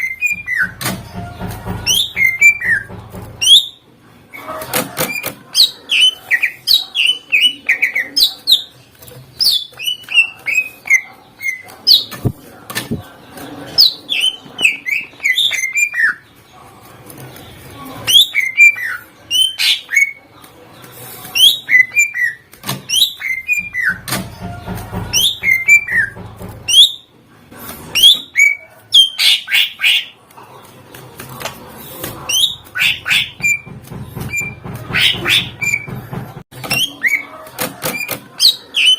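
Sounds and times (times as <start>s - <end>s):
bird singing with whistled notes: 0.0s - 0.8s, 1.8s - 3.8s, 9.4s - 12.3s, 13.7s - 16.2s, 18.0s - 20.2s, 21.3s - 27.1s, 32.3s - 35.9s, 36.6s - 38.9s.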